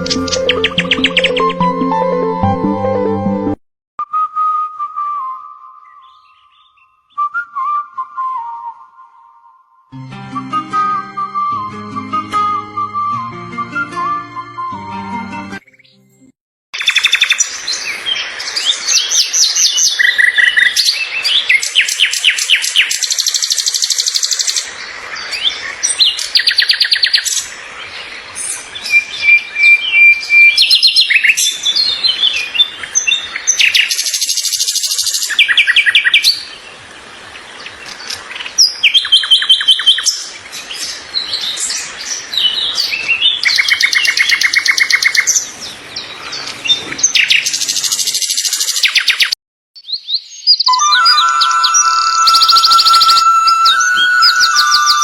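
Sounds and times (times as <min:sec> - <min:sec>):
songbird trilling: 0:50.5 - 0:55.0.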